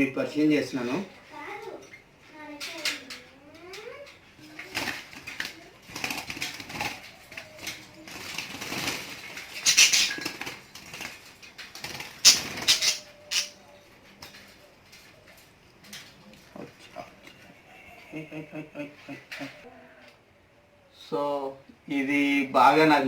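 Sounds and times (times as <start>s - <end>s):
clicks and rustles: 1.6s - 17.5s
lovebirds squawking and chattering: 9.4s - 10.5s, 12.2s - 13.8s
shrill bird bursts: 9.6s - 10.2s, 12.2s - 13.6s.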